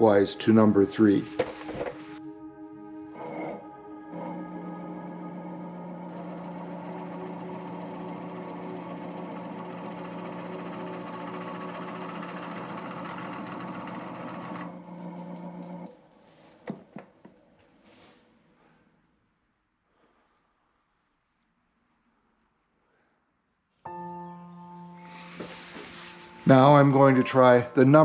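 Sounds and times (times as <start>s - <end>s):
wood lathe motor hum: 4.1s - 16.0s, 25.0s - 28.0s
cutter rasping on spinning wood: 6.0s - 15.8s.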